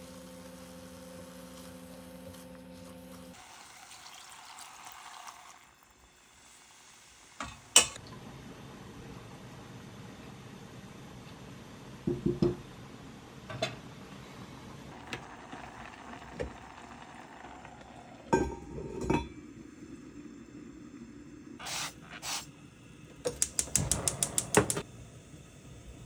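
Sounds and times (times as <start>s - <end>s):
quick clicks: 23.3s - 24.8s.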